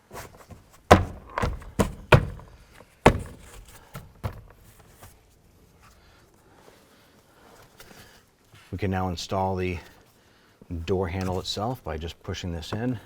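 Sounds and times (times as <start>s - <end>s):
door panel clips popping: 0.9s - 2.5s.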